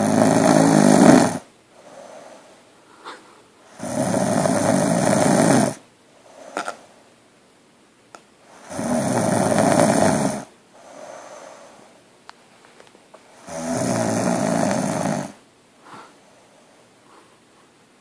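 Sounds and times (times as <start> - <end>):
woman snoring loudly: 0.0 - 2.4, 3.7 - 5.8, 8.6 - 11.6, 13.4 - 15.4
soft breath: 1.7 - 3.7, 6.1 - 7.1, 10.7 - 12.0, 15.8 - 17.8.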